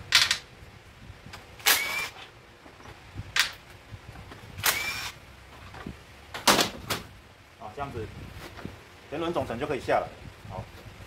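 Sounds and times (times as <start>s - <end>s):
power wrench whirring: 1.6s - 2.2s, 4.6s - 5.2s.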